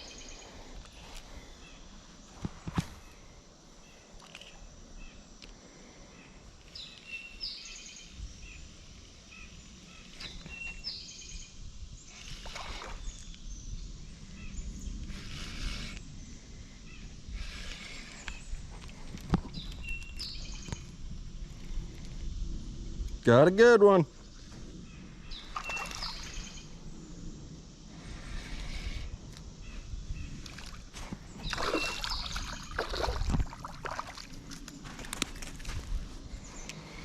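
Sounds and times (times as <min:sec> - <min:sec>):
birds singing: 0:06.0 - 0:21.0, 0:23.8 - 0:26.9, 0:28.0 - 0:35.1, 0:36.2 - 0:37.0.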